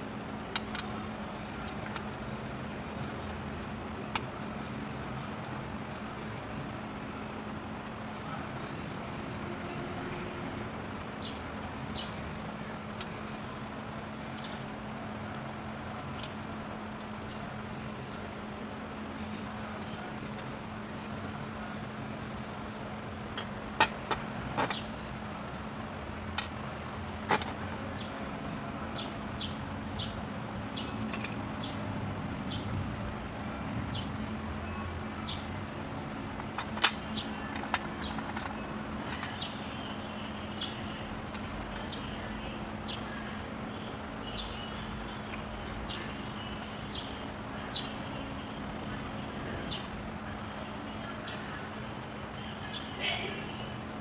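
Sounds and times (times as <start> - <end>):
steady low hum: 0.0 - 54.0
tools clicking and tapping: 31.0 - 31.4.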